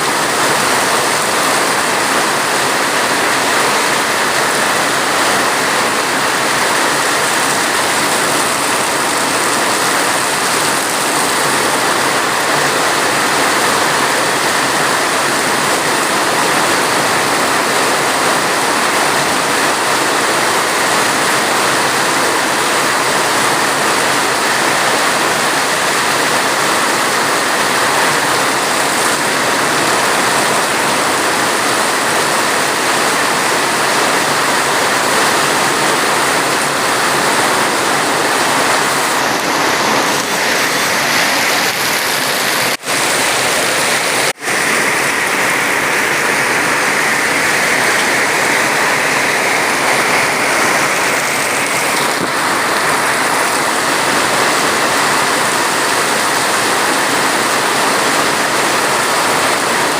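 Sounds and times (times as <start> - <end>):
heavy rain: 0.0 - 59.9.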